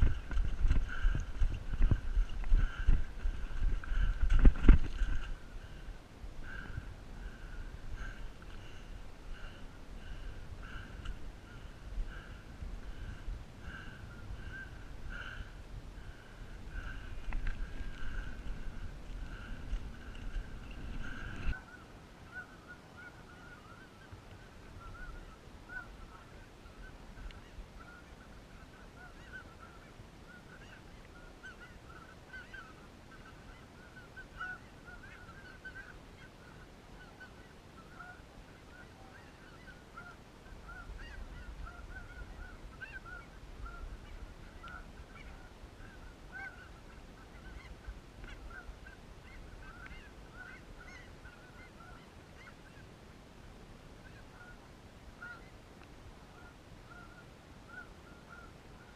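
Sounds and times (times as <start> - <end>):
distant geese honking: 0.0 - 52.9, 54.0 - 55.6, 56.2 - 58.9.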